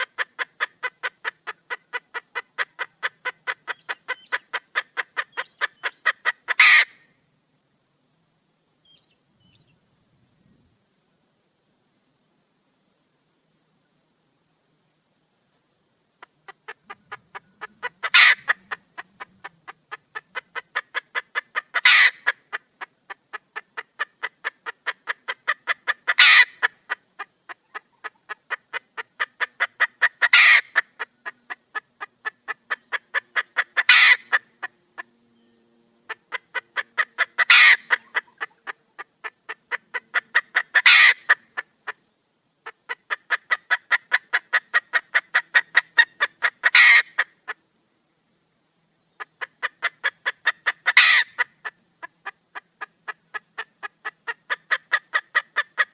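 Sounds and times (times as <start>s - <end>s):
hen clucking rapidly: 0.0s - 7.0s, 16.2s - 35.1s, 36.0s - 47.6s, 49.1s - 55.9s.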